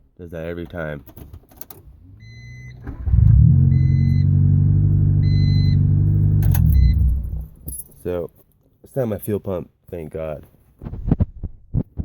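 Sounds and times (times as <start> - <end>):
car engine starting and idling: 1.8 - 7.6
dashboard warning chime: 3.6 - 4.4, 5.2 - 5.9, 6.6 - 7.4.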